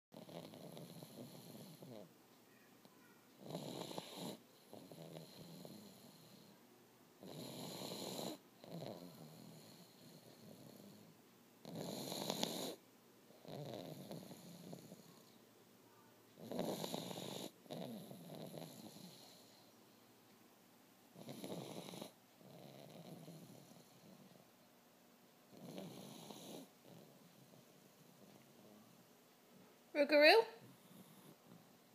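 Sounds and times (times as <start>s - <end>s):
dog snoring: 0.1s - 2.1s, 3.4s - 6.6s, 7.2s - 15.3s, 16.4s - 19.7s, 21.2s - 24.4s, 25.5s - 29.0s, 30.6s - 31.6s.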